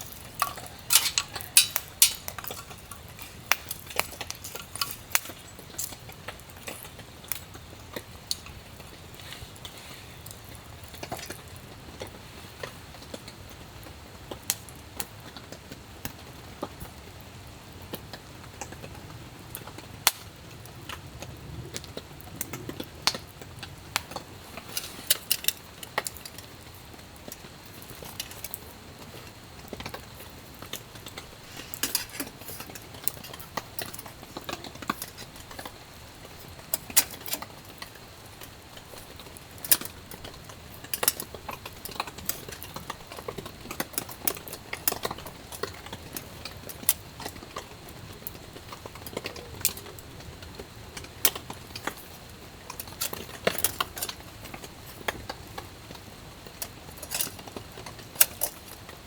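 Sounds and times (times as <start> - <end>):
clinks of small hard objects: 0.0 - 6.0, 30.9 - 35.8, 56.5 - 58.9.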